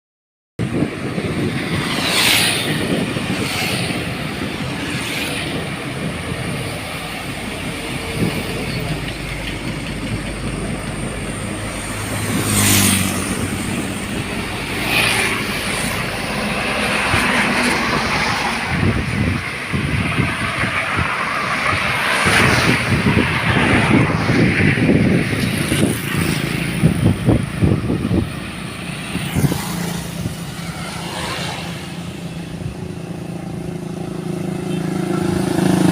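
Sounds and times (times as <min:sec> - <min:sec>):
passing vehicles: 0:00.6 - 0:35.9.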